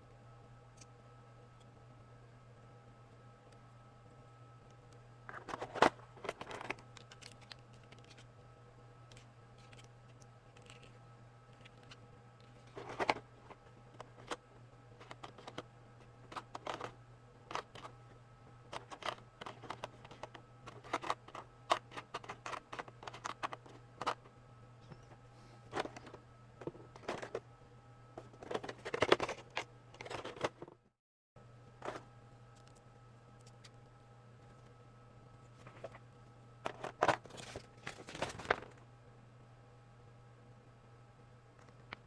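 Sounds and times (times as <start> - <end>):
low electrical hum: 0.0 - 42.0
plastic and cardboard rustling: 5.3 - 8.3, 11.6 - 14.4, 15.0 - 18.0, 18.7 - 24.3, 25.4 - 27.4, 28.2 - 30.7, 35.5 - 38.9.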